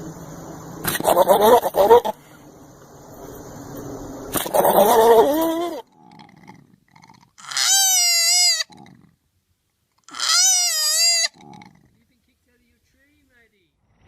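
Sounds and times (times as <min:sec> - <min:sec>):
animal wavering calls: 0:00.1 - 0:02.5, 0:04.3 - 0:06.6, 0:07.4 - 0:09.1, 0:10.0 - 0:11.8.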